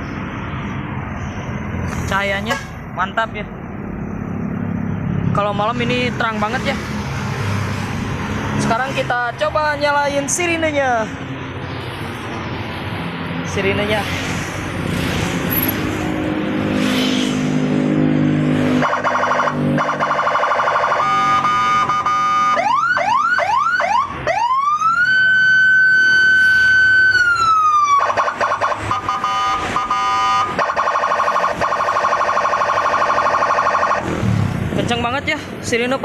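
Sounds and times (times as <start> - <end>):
police siren warbling and wailing: 18.6 - 34.2.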